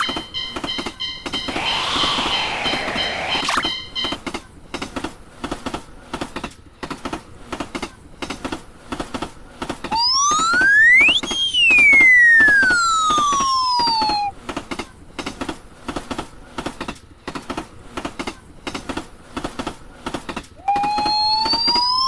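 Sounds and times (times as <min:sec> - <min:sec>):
cartoon whistle sliding: 0:00.0 - 0:00.3, 0:01.4 - 0:04.0, 0:09.9 - 0:14.3, 0:20.6 - 0:22.0
train wheels clacking: 0:00.0 - 0:09.7, 0:14.4 - 0:20.6.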